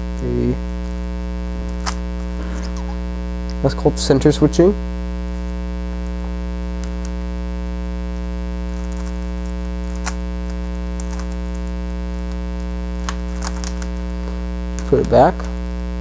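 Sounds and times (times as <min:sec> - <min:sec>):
mains hum with buzzing harmonics: 0:00.0 - 0:16.0.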